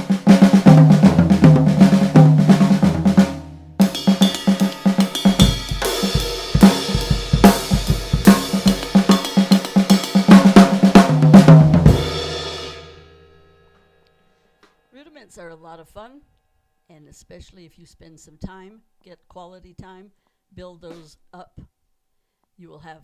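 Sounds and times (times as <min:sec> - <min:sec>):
snare and toms played fast: 0:00.0 - 0:12.6
hi-hat and cymbals: 0:03.8 - 0:10.9
bass drum kicks: 0:03.9 - 0:09.2.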